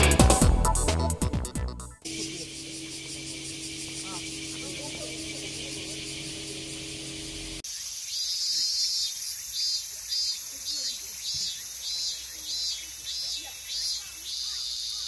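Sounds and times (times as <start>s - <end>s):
cicadas buzzing: 2.0s - 15.0s
pulsing cicada chorus: 2.0s - 15.0s
low steady hum: 2.1s - 7.6s.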